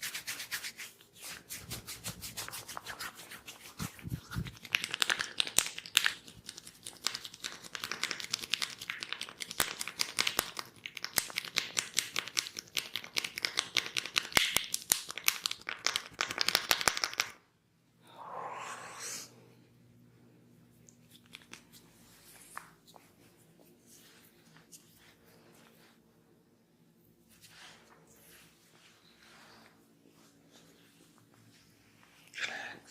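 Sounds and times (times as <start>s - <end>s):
hands rubbing hair and scalp: 0.0s - 7.6s, 21.0s - 26.0s
soft rustle: 20.7s - 32.3s.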